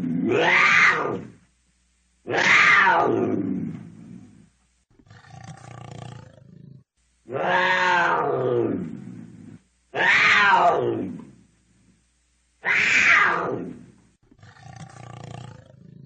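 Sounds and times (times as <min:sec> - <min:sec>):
cougar screaming: 0:00.1 - 0:01.3, 0:02.3 - 0:03.5, 0:07.3 - 0:09.0, 0:09.9 - 0:11.2, 0:12.6 - 0:13.8.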